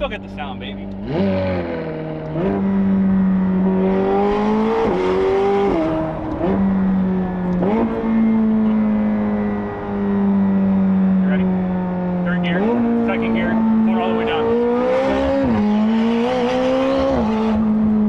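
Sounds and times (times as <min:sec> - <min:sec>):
car engine running: 0:00.0 - 0:18.0.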